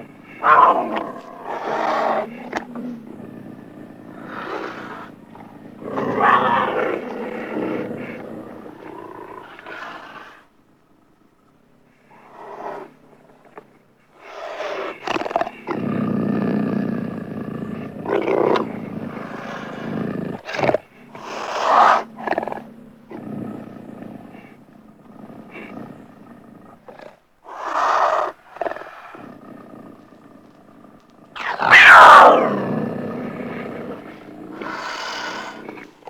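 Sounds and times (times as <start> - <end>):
beast roars: 0.0 - 10.2, 31.4 - 36.0
beast growling: 0.0 - 10.3, 14.5 - 36.0.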